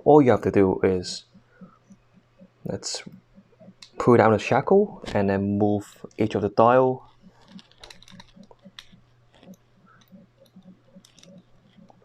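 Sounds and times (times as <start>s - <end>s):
padlock number wheels clicking: 7.0s - 12.0s.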